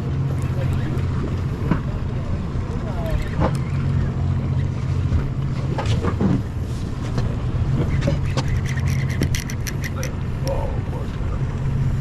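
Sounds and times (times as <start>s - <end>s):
boat engine droning: 0.0s - 12.0s.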